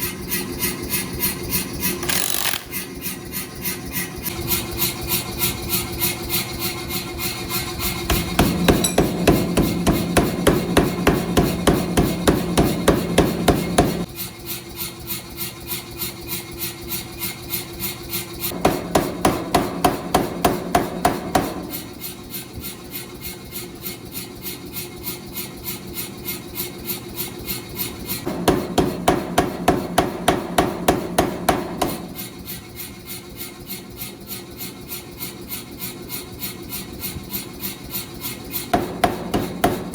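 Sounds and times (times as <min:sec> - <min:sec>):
power hammer pounding hot steel: 0:02.0 - 0:02.9, 0:05.7 - 0:14.1, 0:18.5 - 0:22.2, 0:28.2 - 0:33.2, 0:37.9 - 0:39.9.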